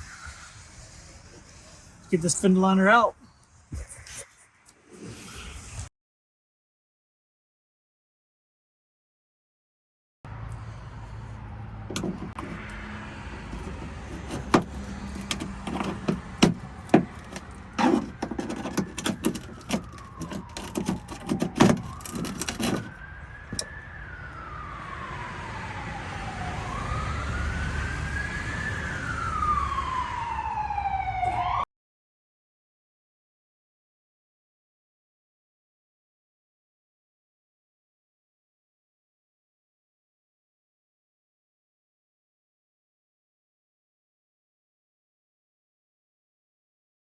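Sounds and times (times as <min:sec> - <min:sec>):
emergency siren wailing: 0:22.0 - 0:31.6.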